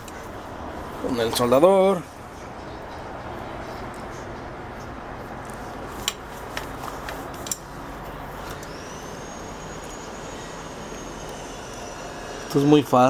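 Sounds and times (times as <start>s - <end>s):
background hum: 0.0s - 13.0s
faint high whine: 6.8s - 13.0s.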